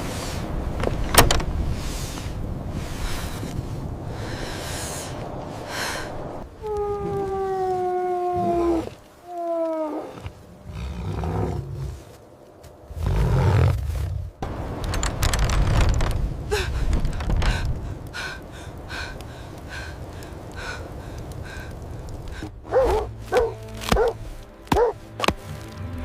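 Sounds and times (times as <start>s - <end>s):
music: 22.6s - 26.0s
dog barking: 22.7s - 25.0s.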